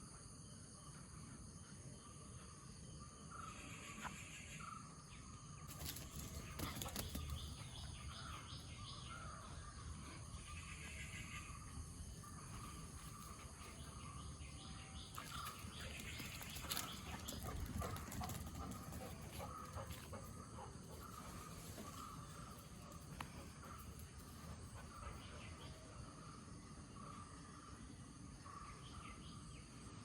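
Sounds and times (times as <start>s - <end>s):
birds chirping: 5.7s - 27.3s.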